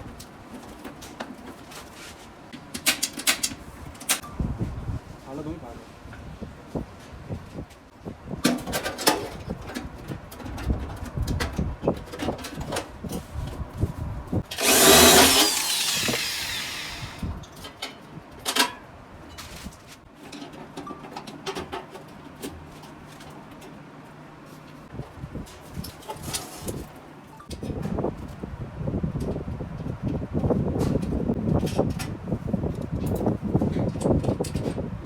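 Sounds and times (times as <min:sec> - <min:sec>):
power tool burst: 0:14.5 - 0:17.3.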